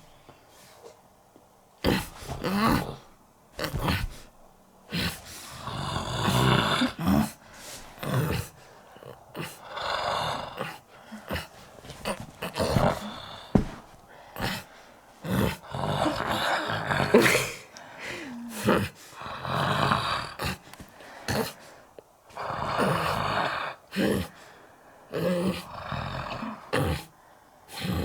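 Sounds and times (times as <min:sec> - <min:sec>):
person mock snoring: 0:04.9 - 0:07.4, 0:08.0 - 0:13.8, 0:14.4 - 0:20.6, 0:22.3 - 0:24.3, 0:25.1 - 0:27.1.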